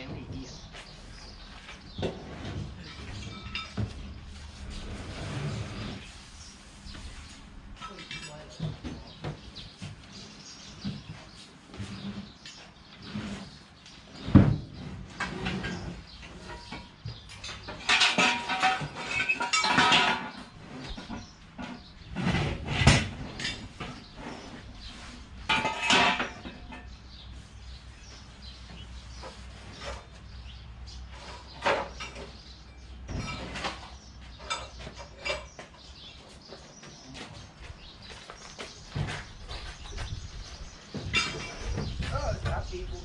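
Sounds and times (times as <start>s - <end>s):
metal objects clattering: 1.6s - 6.1s, 7.7s - 9.2s, 14.2s - 27.2s, 31.0s - 37.0s, 39.0s - 42.5s.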